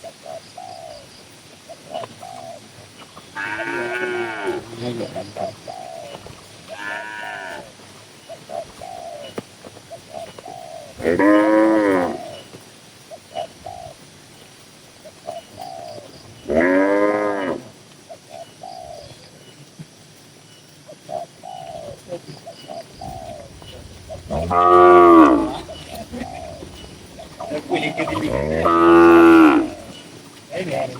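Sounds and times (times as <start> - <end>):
cattle mooing: 3.4 - 4.7, 23.1 - 30.0
short quieter cattle calls: 3.4 - 5.0, 6.7 - 7.7.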